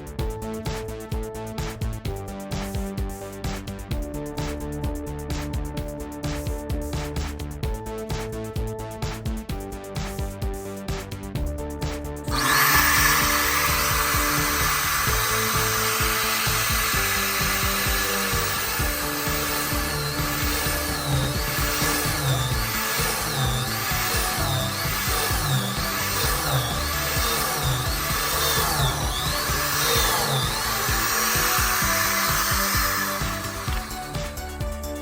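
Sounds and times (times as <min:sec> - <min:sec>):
background music: 0:00.0 - 0:35.0
electric drill boring into wood: 0:12.3 - 0:35.0.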